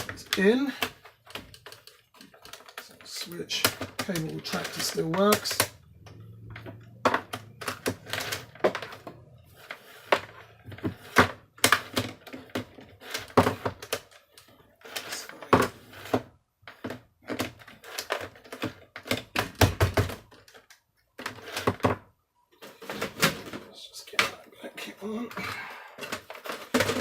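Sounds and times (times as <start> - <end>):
plastic parts clicking and rattling: 0.0 - 24.5, 25.1 - 27.0.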